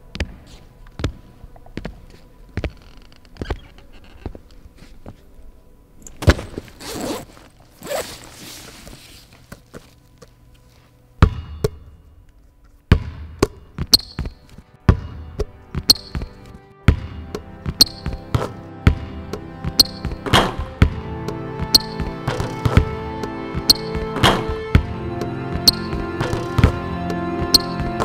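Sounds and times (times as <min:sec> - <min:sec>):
basketball thuds: 0:12.9 - 0:16.3
rhythmic heavy thuds: 0:12.9 - 0:28.0.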